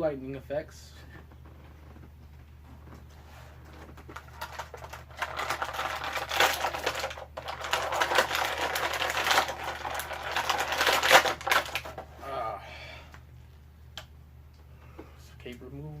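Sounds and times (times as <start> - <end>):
plastic packaging crinkling: 2.8 - 12.1.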